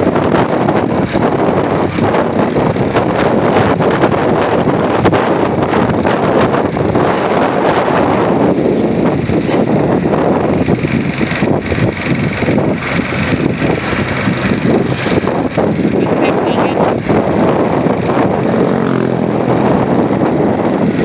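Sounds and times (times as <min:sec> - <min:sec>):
vehicles driving on road: 0:00.0 - 0:21.0.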